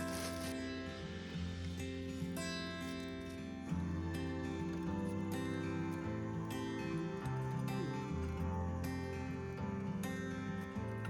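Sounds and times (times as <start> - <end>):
soft plucked guitar melody: 0.0 - 11.0.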